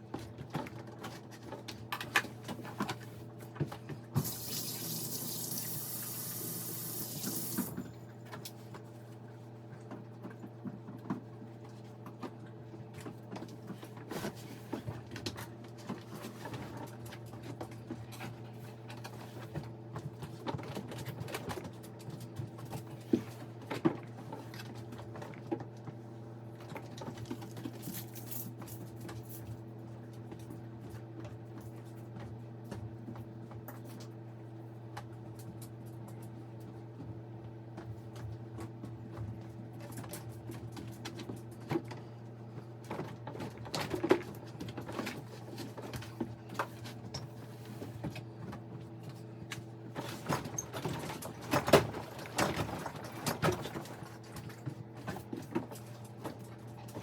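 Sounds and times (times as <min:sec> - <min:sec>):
sink faucet running: 0:04.2 - 0:07.8.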